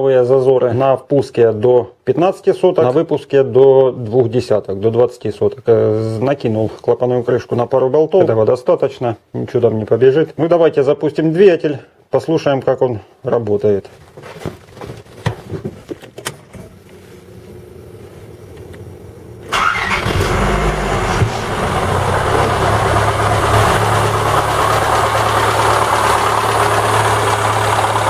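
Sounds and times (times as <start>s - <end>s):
car engine starting and idling: 19.4s - 28.0s.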